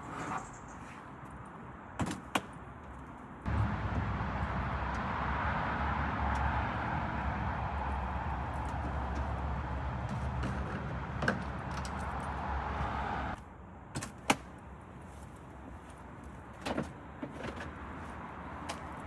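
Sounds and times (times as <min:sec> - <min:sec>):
vehicle engine rumble with road noise: 0:00.0 - 0:19.0.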